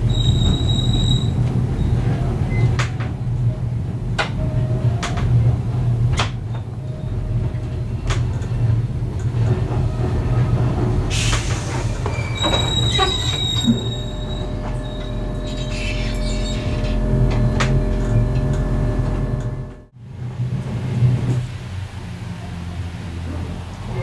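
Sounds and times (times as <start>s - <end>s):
high-pitched wheel squeal: 0.0s - 2.2s, 11.2s - 19.8s
train rumbling on track: 0.0s - 24.0s.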